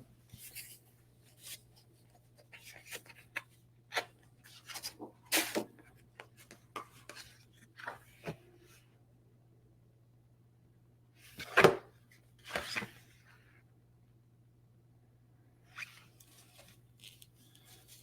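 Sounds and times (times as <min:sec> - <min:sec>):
packaging rustles and scrapes: 0:16.1 - 0:18.0.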